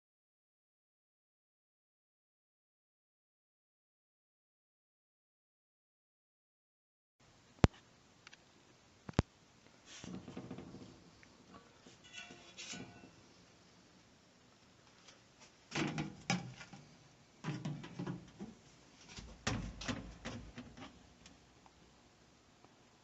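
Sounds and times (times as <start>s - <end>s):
hardware knocking and rattling: 15.7s - 16.8s, 17.4s - 18.6s, 19.3s - 21.0s.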